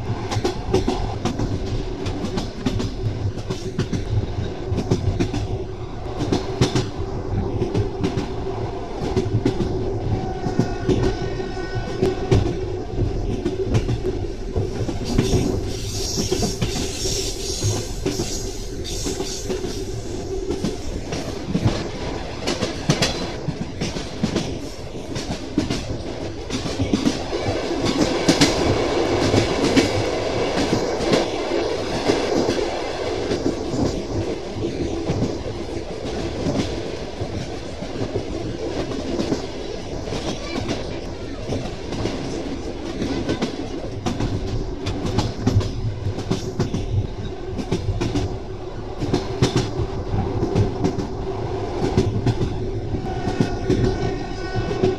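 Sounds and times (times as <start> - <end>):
train wheels clicking over rail joints: 11.8 - 34.3.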